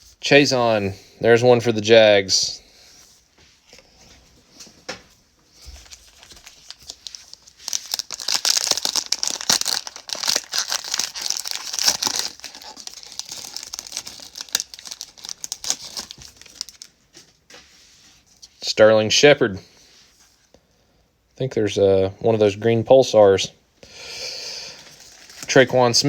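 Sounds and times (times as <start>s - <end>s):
plastic wrapper tearing and crinkling: 5.6s - 17.0s, 24.8s - 25.8s.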